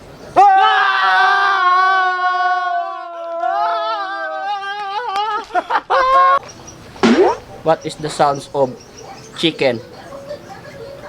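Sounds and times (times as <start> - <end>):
short choppy vocal sounds: 7.0 - 7.4.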